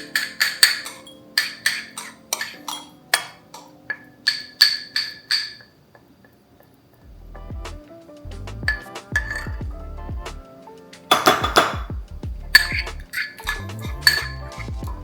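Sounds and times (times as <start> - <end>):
spoon clinking on glass jar: 0.0 - 5.7, 8.7 - 9.6, 12.6 - 14.8.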